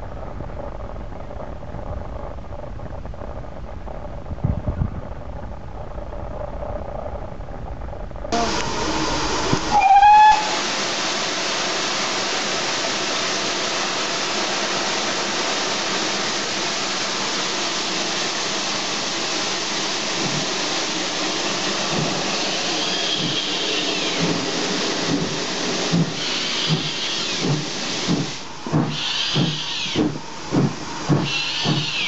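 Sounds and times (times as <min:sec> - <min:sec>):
steam locomotive whistle: 0:08.4 - 0:10.8, 0:22.3 - 0:24.4, 0:26.2 - 0:27.5, 0:28.9 - 0:30.1, 0:31.2 - 0:32.0
steam hissing: 0:08.4 - 0:32.0.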